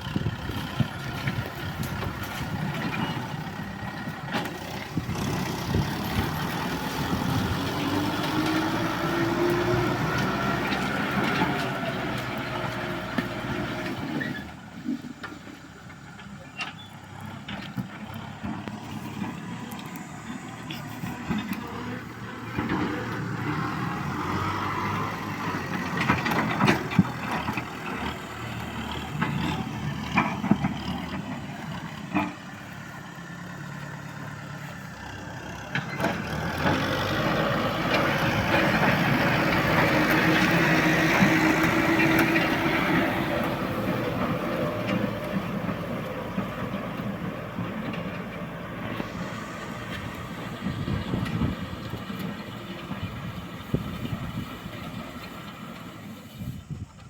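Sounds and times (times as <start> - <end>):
tractor diesel engine under load: 0.0 - 57.0
knocks and clatters: 25.4 - 32.4.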